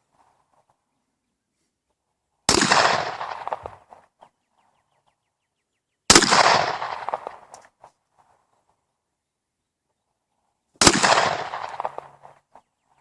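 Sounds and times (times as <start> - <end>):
pistol shots with echo: 2.5 - 4.0, 6.1 - 7.5, 10.8 - 12.3.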